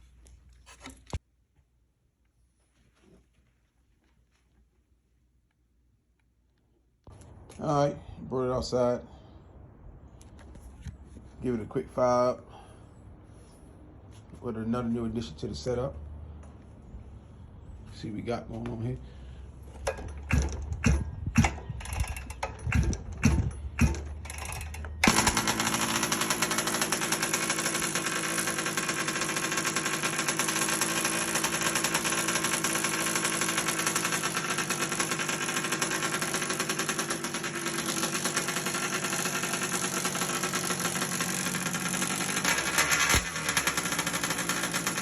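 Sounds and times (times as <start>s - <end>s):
two-stroke engine starting: 19.6s - 45.0s.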